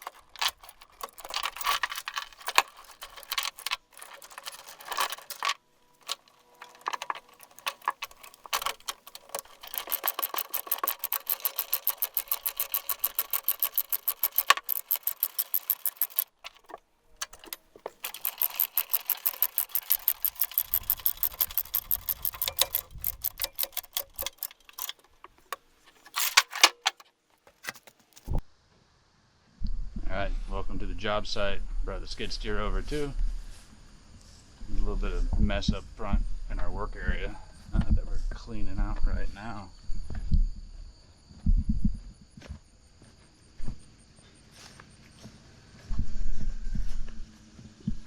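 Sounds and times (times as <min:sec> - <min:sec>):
chain links clinking: 0:00.0 - 0:16.7, 0:17.3 - 0:25.1
ratchet clicking: 0:00.0 - 0:27.0.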